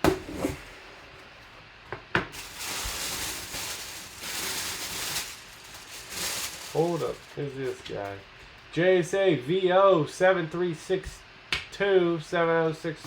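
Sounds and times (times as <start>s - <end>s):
packaging rustling: 2.3s - 7.8s.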